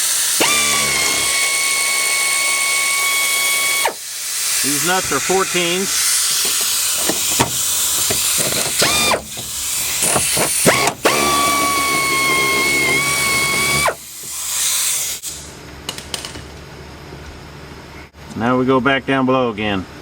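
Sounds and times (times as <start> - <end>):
power ratchet whining: 0.0 - 15.5.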